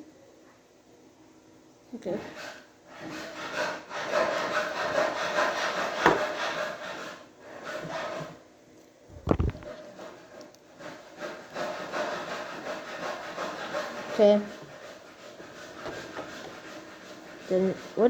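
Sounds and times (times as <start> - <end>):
plastic parts rubbing and scraping: 9.1 - 18.0.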